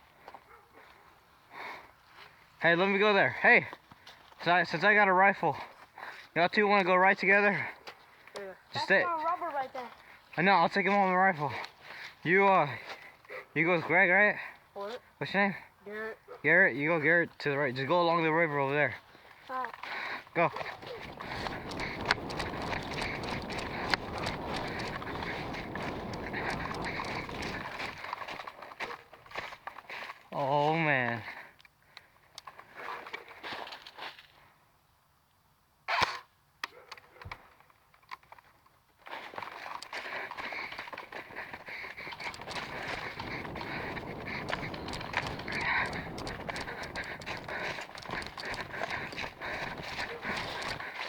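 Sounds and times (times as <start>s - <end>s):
footsteps on rough ground: 0.0s - 15.2s, 16.8s - 34.5s, 38.1s - 51.0s
gear rustling: 20.3s - 29.8s, 39.0s - 51.0s
sharp cracks: 20.5s - 28.0s, 39.8s - 51.0s
wind on microphone: 20.6s - 28.0s, 41.6s - 50.9s
light clicks: 42.0s - 50.8s.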